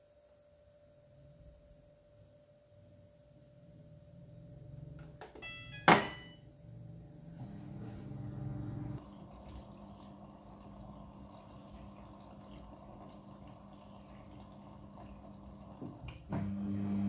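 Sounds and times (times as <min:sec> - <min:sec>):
washing machine low hum: 0:07.1 - 0:17.0.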